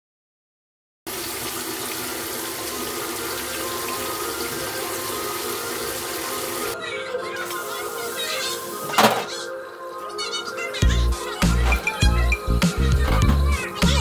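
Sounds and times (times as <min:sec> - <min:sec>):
water running from faucet into sink: 0:01.1 - 0:06.8, 0:07.4 - 0:08.9.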